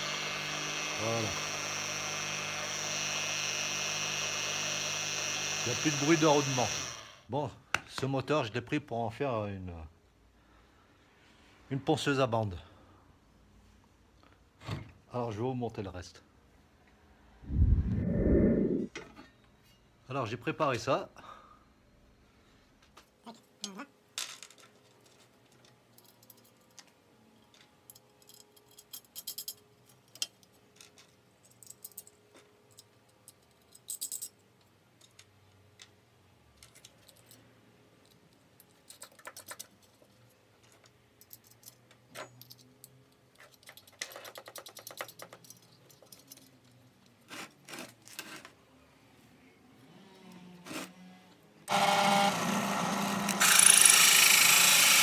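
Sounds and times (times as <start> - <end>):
power tool running: 0.0 - 7.2, 51.7 - 55.0
small metal parts clinking: 24.2 - 35.4, 36.5 - 47.2.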